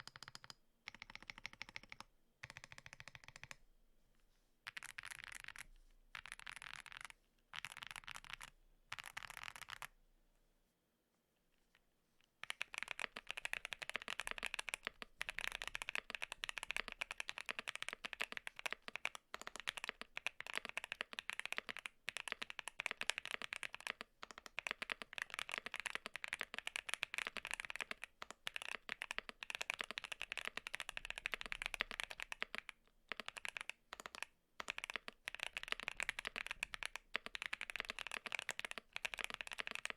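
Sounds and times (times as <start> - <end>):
mechanical keyboard typing: 0.0 - 3.6, 4.7 - 5.6, 6.2 - 9.9, 12.4 - 39.9.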